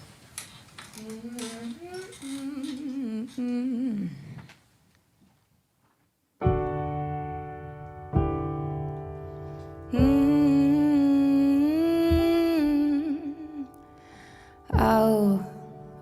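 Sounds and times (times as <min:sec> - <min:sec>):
keyboard chords ringing: 0:06.4 - 0:16.0.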